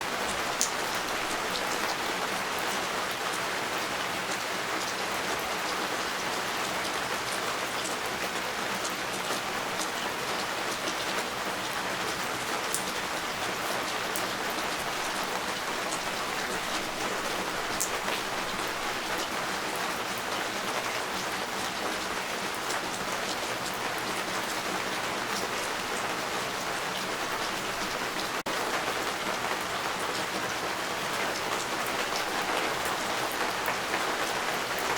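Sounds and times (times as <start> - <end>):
steady rain falling: 0.0 - 34.9.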